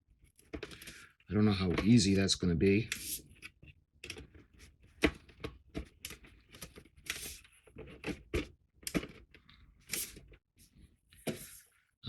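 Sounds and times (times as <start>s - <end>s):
plastic parts clicking and scraping: 0.3s - 2.0s, 2.8s - 10.4s.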